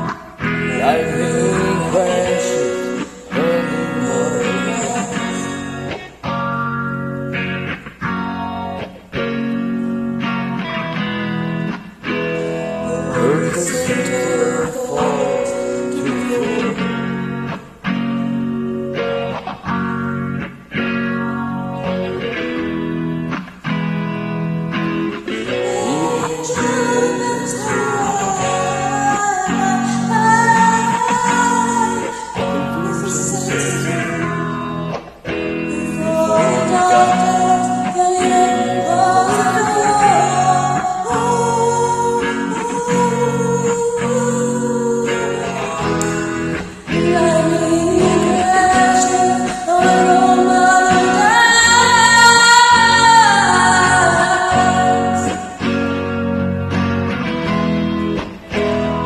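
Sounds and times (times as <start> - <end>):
woman singing: 0.0 - 6.1, 12.4 - 17.7, 25.4 - 34.9, 35.7 - 55.8
strummed guitar chords: 0.0 - 59.0.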